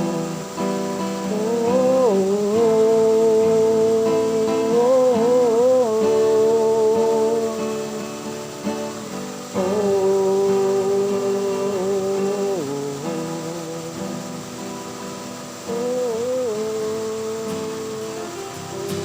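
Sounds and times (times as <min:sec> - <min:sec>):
strummed acoustic guitar: 0:00.0 - 0:19.0
wavering held vocal notes: 0:00.0 - 0:19.0.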